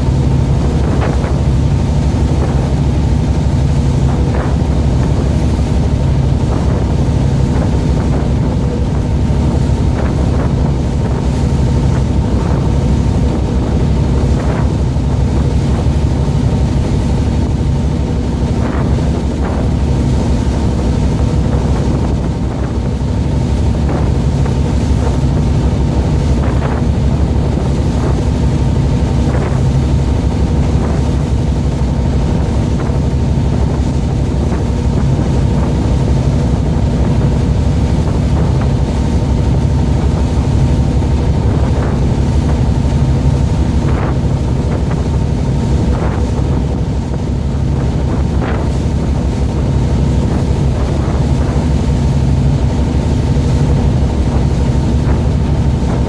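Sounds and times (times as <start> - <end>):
boat engine droning: 0.0 - 56.0
wind on microphone: 0.0 - 56.0.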